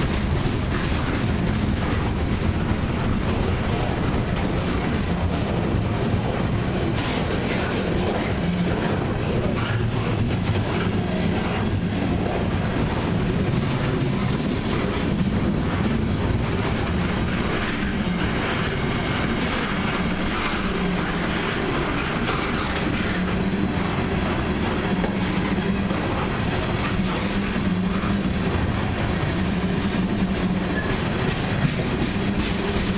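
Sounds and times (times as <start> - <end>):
freight train wheels rumbling: 0.0 - 32.9
wheels clicking over rail joints: 29.6 - 32.9.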